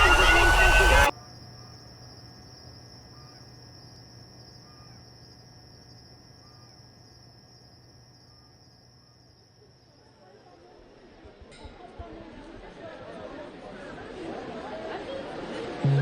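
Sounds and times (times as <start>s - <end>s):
high insect drone: 0.1s - 10.5s.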